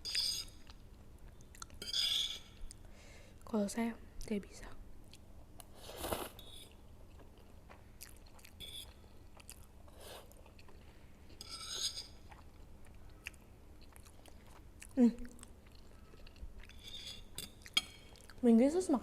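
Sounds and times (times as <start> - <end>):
chewing and mouth sounds: 0.6 - 1.8, 5.0 - 11.4, 12.1 - 18.4.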